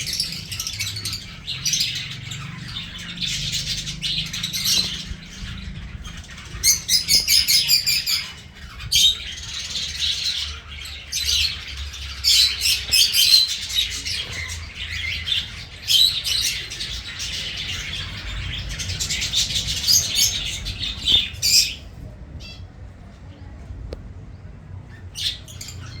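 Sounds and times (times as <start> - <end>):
birds chirping and twittering: 0.0 - 26.0.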